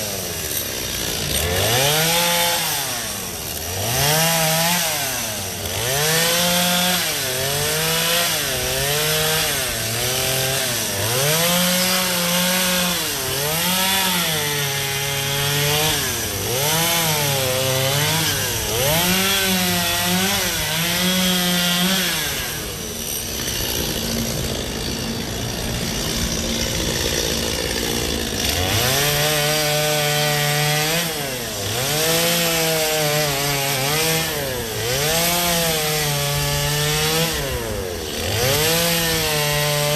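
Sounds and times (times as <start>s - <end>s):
chainsaw revving: 0.0s - 39.9s.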